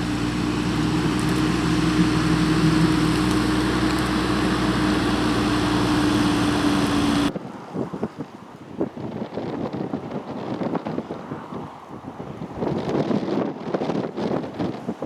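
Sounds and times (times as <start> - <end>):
tractor engine running: 0.0 - 7.3
wind buffeting microphone: 0.0 - 15.0.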